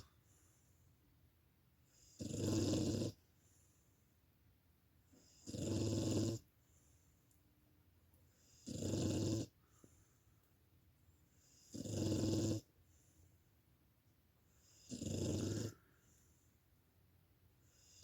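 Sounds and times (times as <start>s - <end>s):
quiet breathing: 0.0s - 1.2s, 3.1s - 4.4s, 6.4s - 8.7s, 9.4s - 11.8s, 12.6s - 13.8s, 14.4s - 18.0s
dog snoring: 1.9s - 3.2s, 5.1s - 6.5s, 8.4s - 9.6s, 11.4s - 12.7s, 14.6s - 16.2s, 17.6s - 18.0s.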